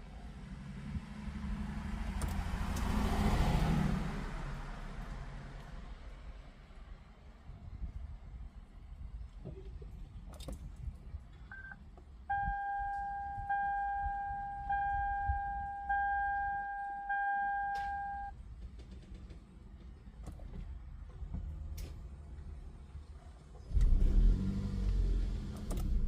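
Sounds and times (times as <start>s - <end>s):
short beep: 11.5s - 18.3s
dashboard chime tones: 12.3s - 18.3s
key and button clicks: 17.4s - 18.3s.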